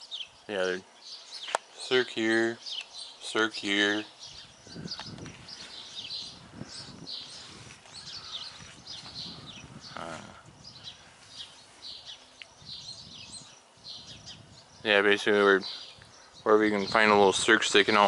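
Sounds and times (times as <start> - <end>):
small birds chirping: 0.0 - 18.0
faint rustling and scuffing: 5.2 - 6.3, 7.1 - 9.3, 11.0 - 12.2.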